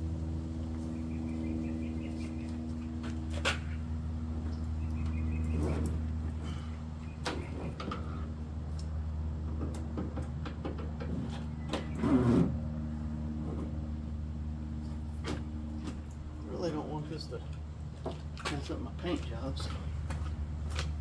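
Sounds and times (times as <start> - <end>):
steady low hum: 0.0 - 21.0.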